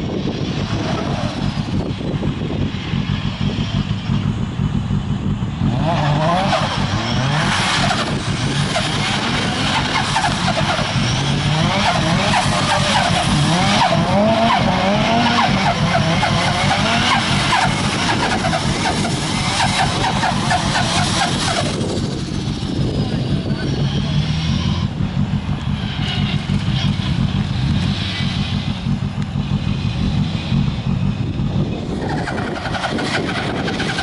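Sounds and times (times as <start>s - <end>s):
tyres spinning and squealing: 0.6s - 1.8s, 5.6s - 28.9s, 31.8s - 34.0s
car engine revving hard: 3.3s - 31.1s, 31.8s - 34.0s.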